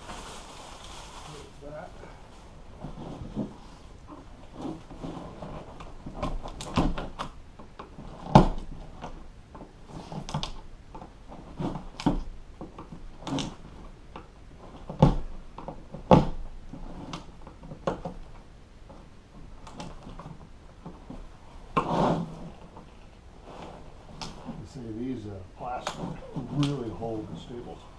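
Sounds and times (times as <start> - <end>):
scraping on plastic: 2.7 - 24.7.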